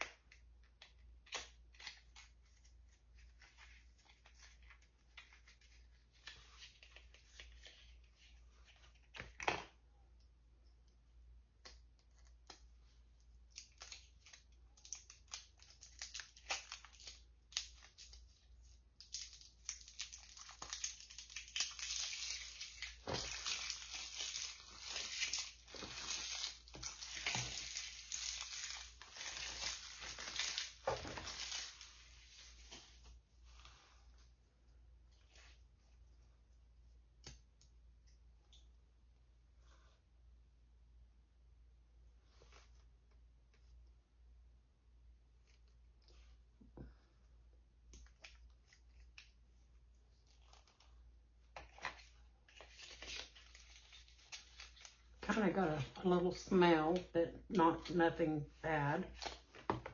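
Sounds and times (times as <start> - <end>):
wrapping crinkling and tearing: 0.0 - 9.6, 13.4 - 34.0, 47.9 - 56.0, 59.0 - 59.9
plastic packaging clicks and rustles: 13.4 - 33.1, 51.5 - 56.0, 59.0 - 59.9.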